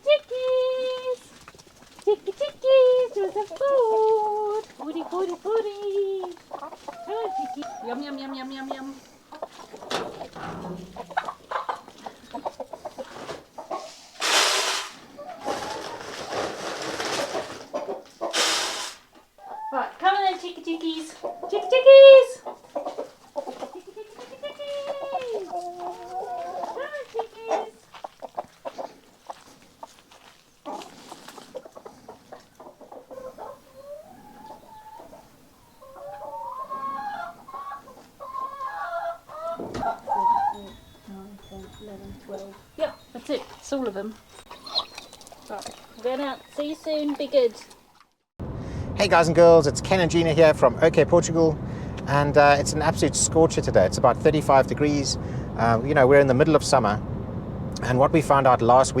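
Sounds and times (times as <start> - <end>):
chickens clucking: 0.1 - 48.2.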